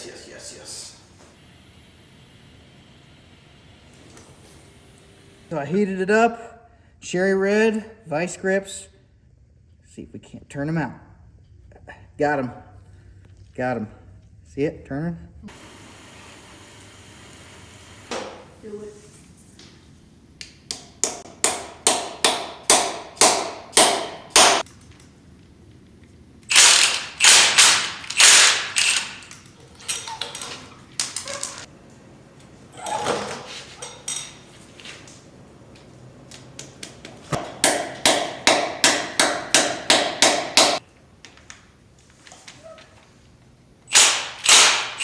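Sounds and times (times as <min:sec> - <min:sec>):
sharp metal clicks of hand tool: 0:26.5 - 0:29.4, 0:43.9 - 0:45.0.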